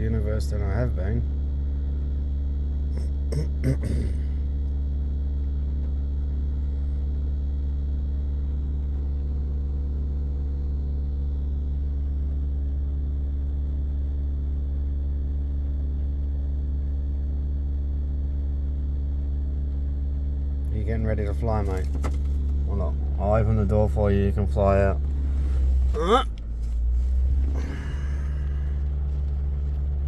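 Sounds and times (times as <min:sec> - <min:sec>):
car engine idling: 0:00.0 - 0:30.0
heater fan running: 0:20.6 - 0:30.0.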